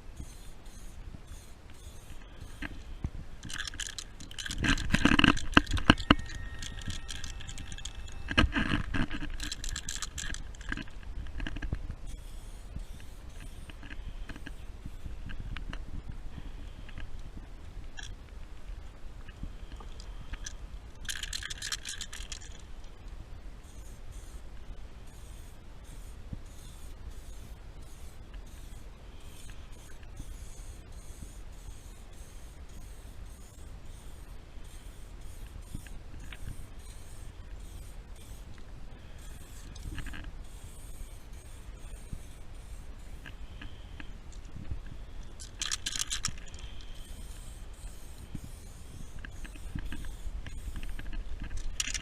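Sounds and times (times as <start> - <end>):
spray paint can hissing: 0.2 - 2.8, 12.1 - 15.0, 23.6 - 24.4, 25.1 - 43.6, 45.4 - 52.0
aerosol can rattling: 3.4 - 11.0, 20.4 - 22.6, 45.4 - 52.0.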